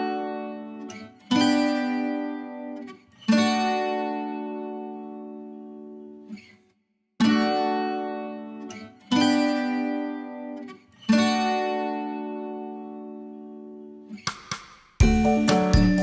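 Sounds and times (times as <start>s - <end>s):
plucked-string chords ringing: 15.0s - 16.0s.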